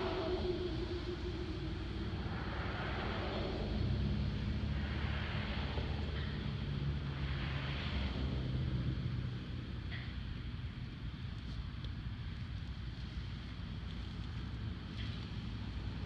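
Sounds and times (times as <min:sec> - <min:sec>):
blower fan humming: 0:00.0 - 0:04.5
wind noise: 0:00.0 - 0:16.0.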